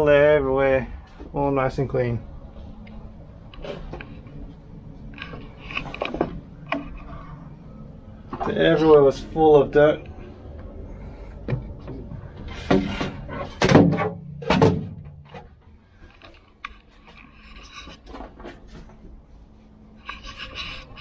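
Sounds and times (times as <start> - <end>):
handling knocks and rustles: 11.4 - 19.2.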